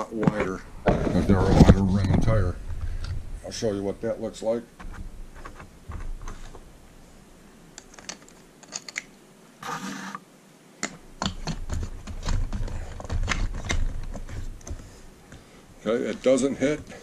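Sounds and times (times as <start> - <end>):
scraping rustle: 0.3 - 6.7.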